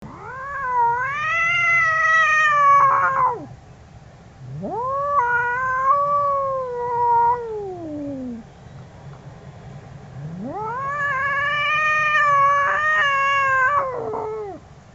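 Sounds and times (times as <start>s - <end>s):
angry cat yowling: 0.0s - 3.5s, 4.4s - 8.4s, 10.2s - 14.6s.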